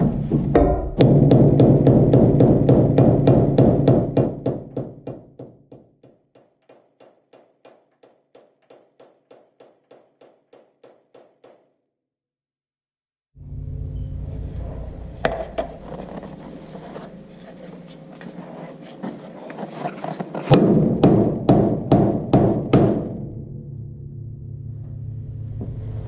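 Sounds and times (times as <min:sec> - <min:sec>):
sharp ringing taps: 0:05.4 - 0:11.8
loud sustained sound: 0:13.4 - 0:15.8.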